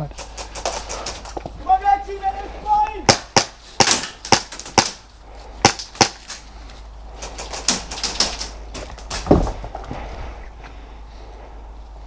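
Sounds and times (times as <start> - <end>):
airsoft gun shots: 3.1 - 5.0.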